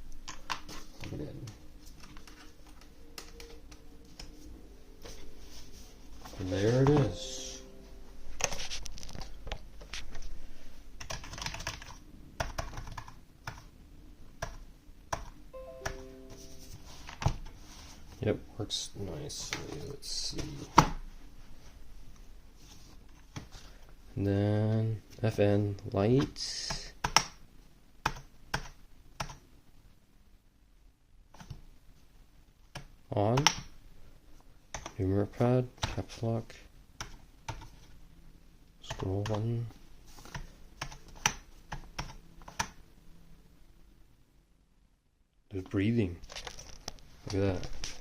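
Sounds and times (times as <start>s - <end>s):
keyboard keys clicking: 11.0s - 13.7s.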